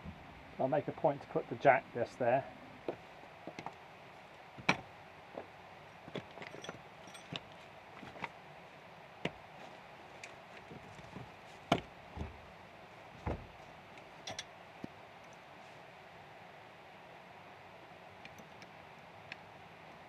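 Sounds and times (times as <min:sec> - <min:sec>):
knocks and thuds: 0:11.1 - 0:12.4, 0:13.2 - 0:13.6.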